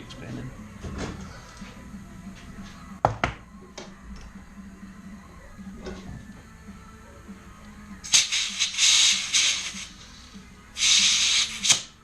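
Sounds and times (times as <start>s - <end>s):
compressed air hissing: 8.0s - 12.0s.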